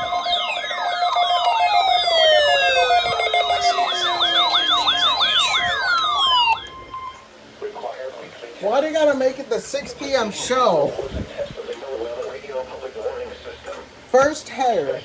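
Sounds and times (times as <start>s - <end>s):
steady pulsing tone: 0.0s - 7.2s
falling whistle-like glides: 0.0s - 7.3s
fast yelping siren: 0.0s - 7.3s.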